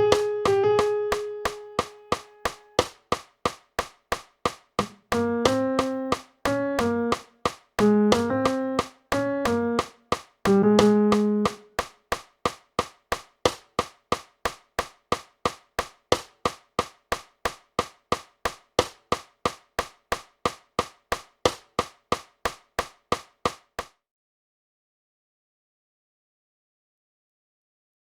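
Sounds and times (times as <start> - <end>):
piano note: 0.0 - 2.9, 4.8 - 9.9, 10.5 - 11.8
metronome clicks ticking: 4.8 - 11.9.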